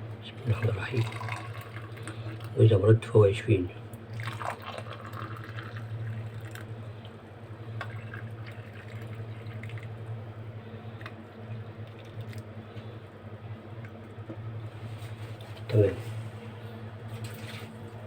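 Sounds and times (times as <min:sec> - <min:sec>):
steady low hum: 0:00.0 - 0:18.0
faint drips: 0:00.5 - 0:02.6
tea pouring into cups: 0:00.5 - 0:02.7, 0:04.0 - 0:06.8, 0:07.8 - 0:10.0.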